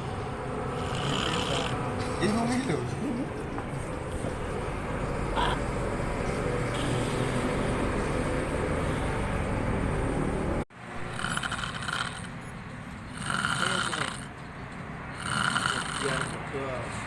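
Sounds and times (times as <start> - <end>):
man snoring: 0.7 - 2.0, 6.7 - 9.6, 11.1 - 12.3, 13.1 - 14.4, 15.1 - 16.5.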